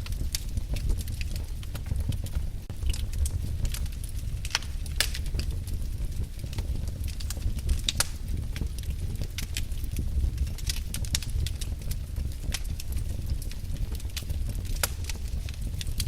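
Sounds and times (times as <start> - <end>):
low steady rumble: 0.0 - 16.0
wood fire crackling and popping: 0.0 - 16.0.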